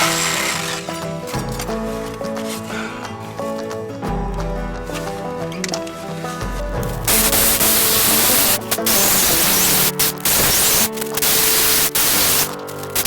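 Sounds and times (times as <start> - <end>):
power tool cutting hiss: 0.0 - 1.1, 7.1 - 13.0
background music: 0.0 - 13.0.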